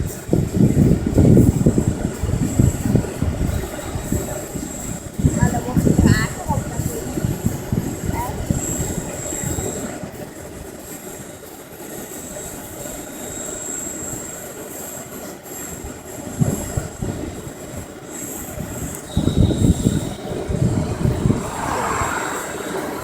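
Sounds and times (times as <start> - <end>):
wind rumbling on microphone: 0.0 - 10.8, 15.8 - 23.0
rc helicopter motor whine: 18.4 - 23.0.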